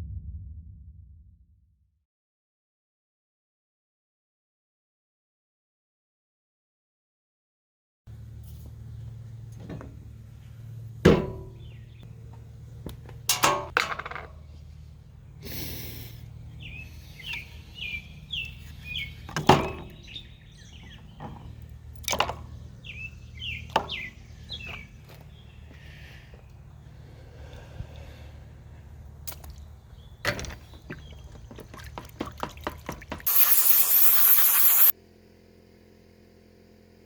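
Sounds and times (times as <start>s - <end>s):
low steady hum: 0.0s - 1.5s
small birds chirping: 11.6s - 12.8s, 14.8s - 34.9s.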